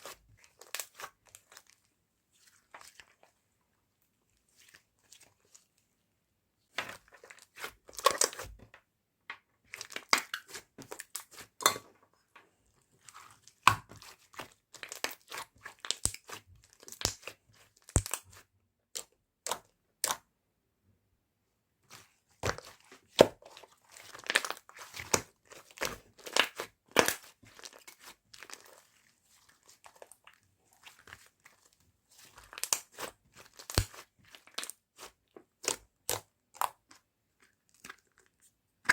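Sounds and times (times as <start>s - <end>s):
slime crackling and crunching: 7.2s - 8.5s, 13.2s - 18.4s, 22.4s - 36.9s.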